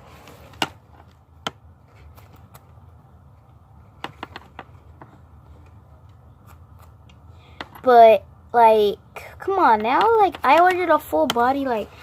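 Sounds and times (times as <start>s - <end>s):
low background hum: 0.0s - 12.0s
sharp clicks and taps: 9.7s - 11.6s.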